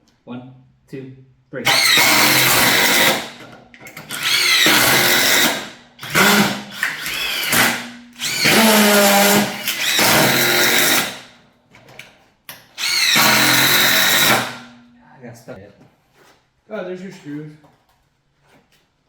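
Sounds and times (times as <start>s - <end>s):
impact drivers driving screws: 1.7s - 11.3s, 12.6s - 14.7s.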